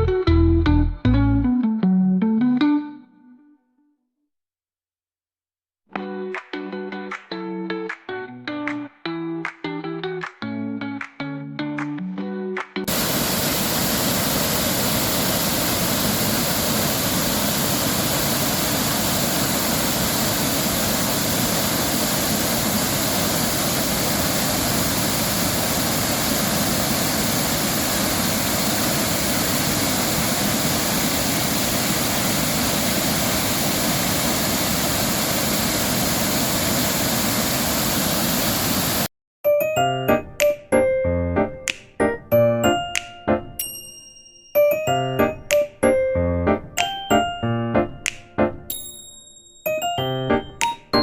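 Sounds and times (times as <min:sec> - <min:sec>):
guitar music: 0:00.0 - 0:03.5, 0:05.9 - 0:12.8
small waterfall pouring: 0:12.9 - 0:39.1.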